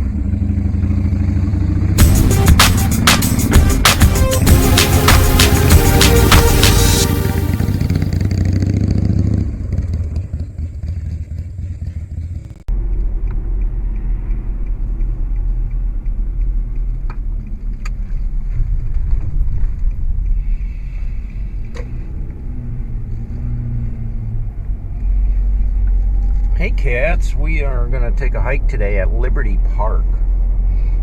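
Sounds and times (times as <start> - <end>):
low vehicle rumble: 12.4 - 31.0.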